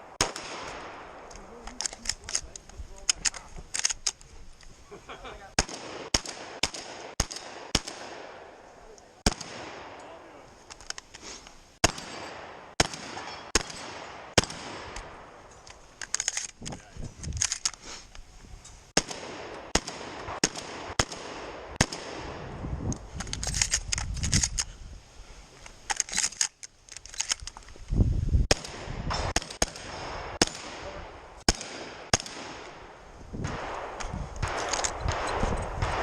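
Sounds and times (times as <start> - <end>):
shotgun shots: 0.1 - 1.3, 5.6 - 8.6, 9.2 - 10.0, 11.8 - 15.3, 19.0 - 22.5, 28.5 - 36.0
handling and movement noise: 0.6 - 5.5, 10.0 - 12.4, 14.8 - 18.9, 22.8 - 28.0, 33.5 - 36.0.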